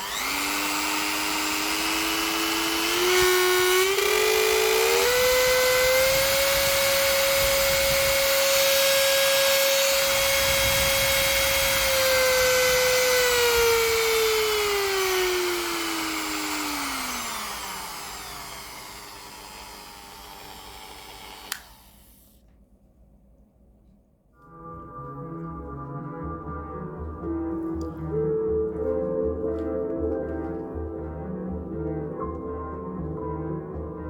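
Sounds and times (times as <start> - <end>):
rotary tool whining: 0.0 - 22.4.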